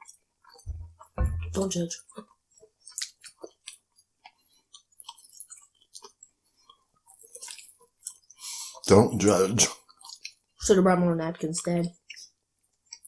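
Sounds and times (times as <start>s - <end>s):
wet chewing and lip smacking: 2.7s - 8.9s, 9.7s - 10.6s, 11.9s - 13.0s.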